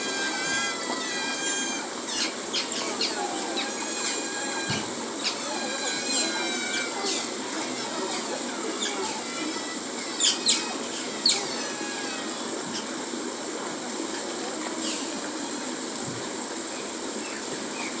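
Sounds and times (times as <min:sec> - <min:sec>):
steady background noise: 0:00.0 - 0:18.0
otters chirping: 0:00.1 - 0:12.9.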